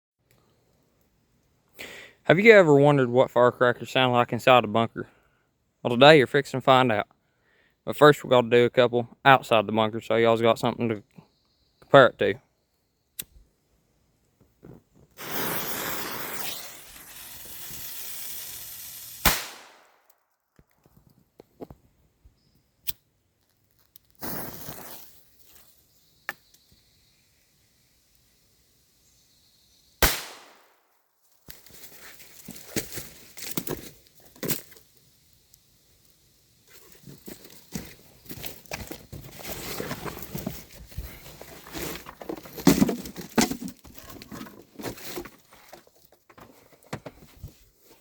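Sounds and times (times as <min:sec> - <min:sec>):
firecracker crackling and pops: 0:14.7 - 0:20.9, 0:22.8 - 0:26.6, 0:30.0 - 0:38.7
firecracker bang: 0:15.2 - 0:17.7, 0:19.2 - 0:20.0, 0:30.0 - 0:30.6
fuse hissing: 0:15.2 - 0:19.3.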